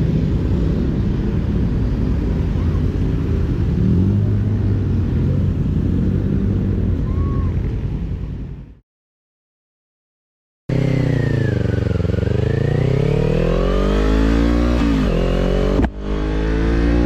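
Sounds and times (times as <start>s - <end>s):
wind rushing over microphone: 0.0s - 8.8s
motorcycle engine running: 10.7s - 14.0s.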